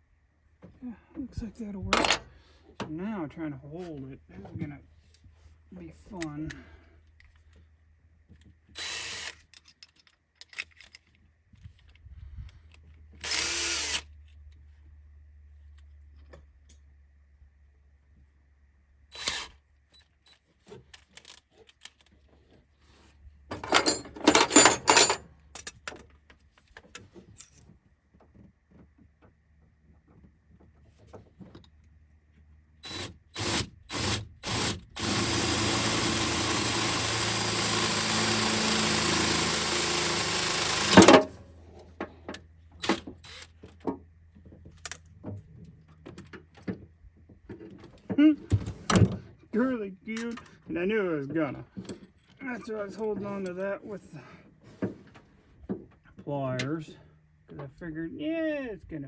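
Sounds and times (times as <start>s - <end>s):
power drill running: 8.8s - 9.4s, 13.2s - 14.0s, 19.1s - 19.5s, 32.8s - 41.3s, 43.2s - 43.5s
hand tools clicking and rattling: 23.5s - 25.9s, 34.6s - 41.3s.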